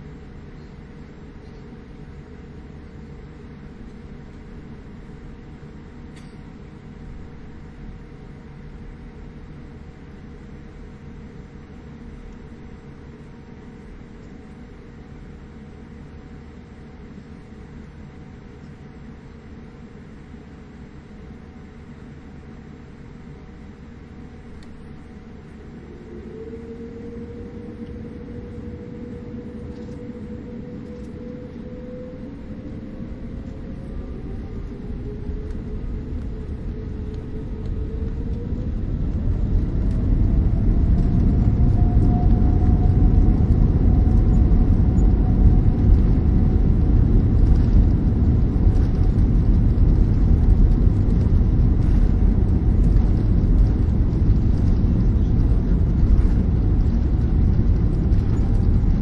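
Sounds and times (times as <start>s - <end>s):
high rising whine: 24.4s - 59.0s
jet engines spooling up: 24.6s - 59.0s
loud roar of takeoff thrust: 25.6s - 59.0s.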